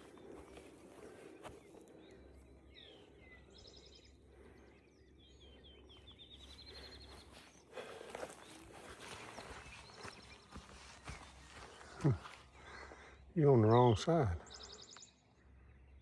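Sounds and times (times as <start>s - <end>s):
footsteps on trail: 0.0s - 2.2s, 6.0s - 13.2s
songbirds singing: 0.0s - 16.0s.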